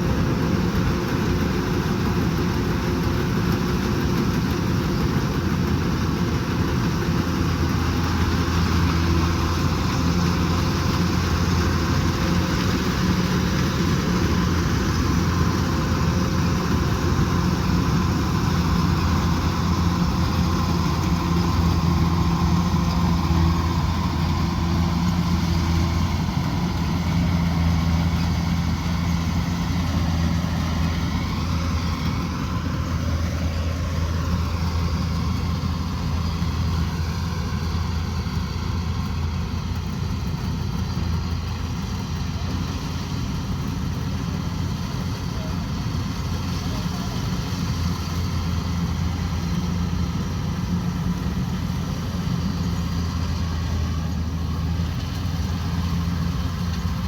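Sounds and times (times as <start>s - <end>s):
combine harvester engine humming: 0.0s - 57.0s.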